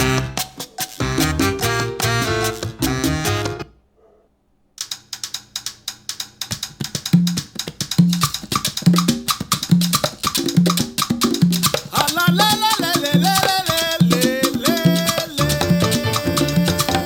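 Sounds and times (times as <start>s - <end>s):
music through loudspeaker: 0.0s - 3.6s, 11.7s - 17.0s
quick percussion hits: 0.0s - 3.6s, 4.8s - 17.0s.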